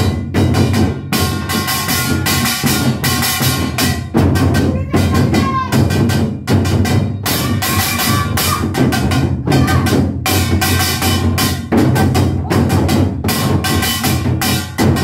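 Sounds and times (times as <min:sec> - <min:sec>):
barrel drums struck rapidly: 0:00.0 - 0:15.0
pitched music: 0:00.0 - 0:15.0.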